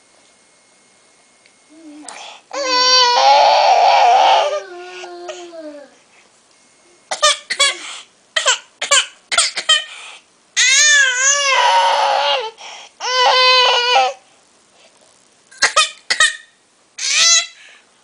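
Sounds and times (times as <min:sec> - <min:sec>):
baby crying: 0:02.5 - 0:05.6, 0:10.6 - 0:14.2, 0:17.0 - 0:17.6.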